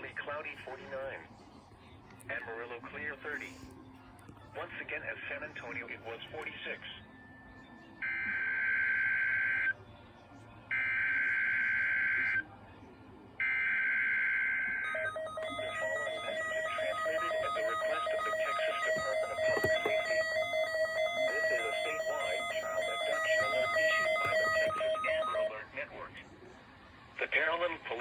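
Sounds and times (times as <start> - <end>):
steady attention tone: 14.8 - 25.6
alert data tone bursts: 14.9 - 25.5.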